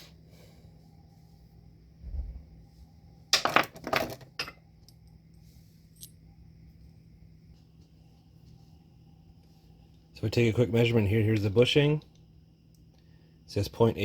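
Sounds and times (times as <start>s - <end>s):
metal parts clattering on workbench: 3.3s - 4.6s.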